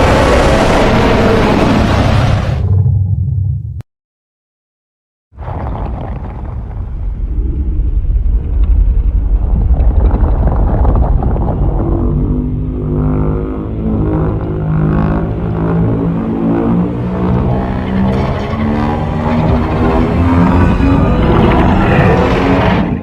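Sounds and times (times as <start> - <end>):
deep rumble: 0.0 - 3.8, 5.4 - 23.0
monster growling roar: 17.2 - 23.0.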